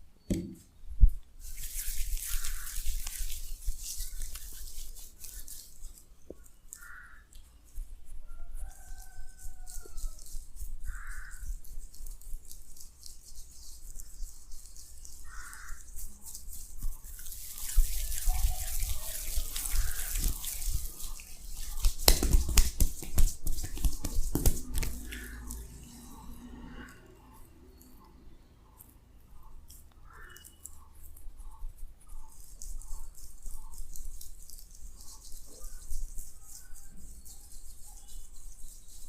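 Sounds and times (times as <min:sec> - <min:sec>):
hands rubbing skin and hair: 0:01.4 - 0:26.5, 0:30.6 - 0:39.0.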